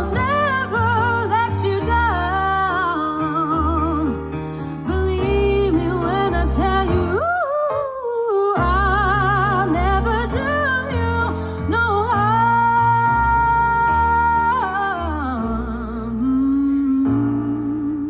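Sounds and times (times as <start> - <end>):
steady bass line: 0.0 - 4.3
instrumental backing: 0.0 - 8.0
woman singing with vibrato: 0.0 - 18.0.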